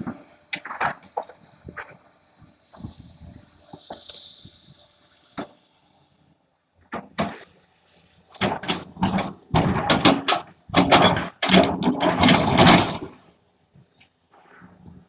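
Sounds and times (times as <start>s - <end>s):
excavator bucket clattering rubble: 8.4s - 13.2s.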